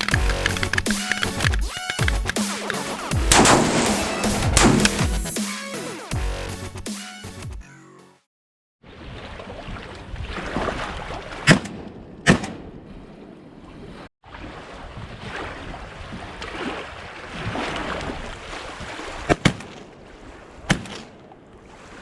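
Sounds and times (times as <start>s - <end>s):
wind: 0.0s - 5.2s, 8.8s - 22.0s
water noise: 0.0s - 5.4s, 8.8s - 22.0s
shotgun shots: 3.3s - 5.2s.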